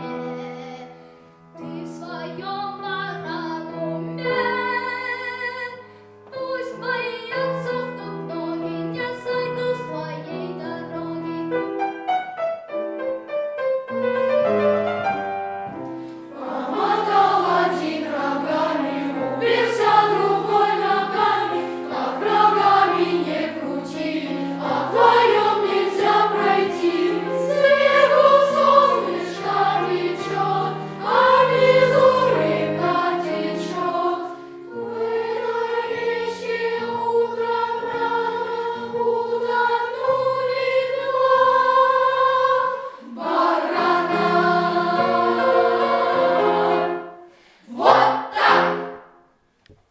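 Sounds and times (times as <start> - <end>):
piano accompaniment: 0.0 - 49.5
boys' choir singing: 16.3 - 49.0.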